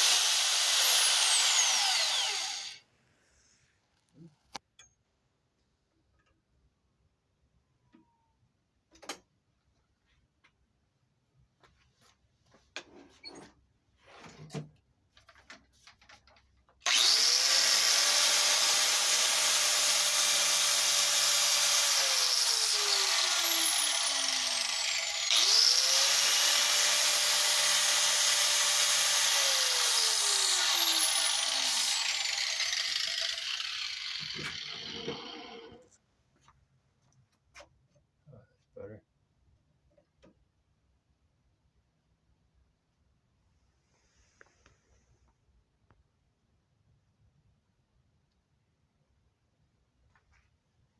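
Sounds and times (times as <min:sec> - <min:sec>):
power tool grinding: 0:00.0 - 0:02.8, 0:16.8 - 0:35.8.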